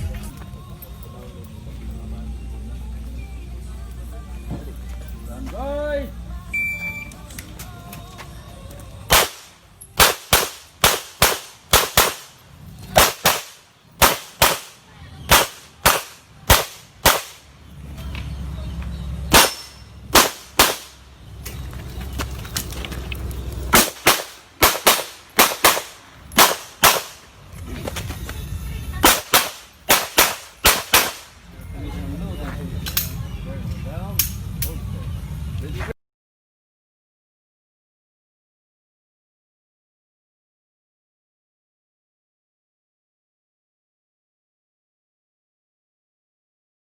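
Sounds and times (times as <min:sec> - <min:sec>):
pistol shots: 0:09.1 - 0:17.4, 0:19.3 - 0:21.0, 0:23.7 - 0:27.3, 0:29.0 - 0:31.3.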